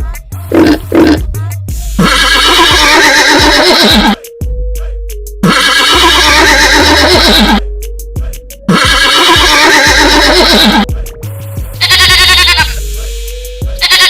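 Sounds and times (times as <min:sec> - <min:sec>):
upbeat background music: 0:00.0 - 0:14.0
quavering bleat: 0:00.6 - 0:01.2, 0:02.0 - 0:04.2, 0:05.4 - 0:07.6, 0:08.7 - 0:10.9, 0:11.8 - 0:12.8, 0:13.8 - 0:14.0
farm animal calls: 0:02.0 - 0:04.2, 0:05.4 - 0:07.6, 0:08.7 - 0:10.9, 0:11.8 - 0:12.7, 0:13.8 - 0:14.0.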